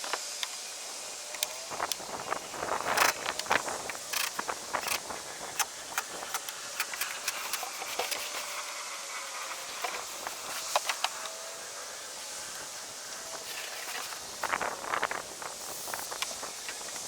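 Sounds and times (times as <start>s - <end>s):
steady hiss: 0.0s - 17.0s
sharp clicks and knocks: 2.9s - 8.5s.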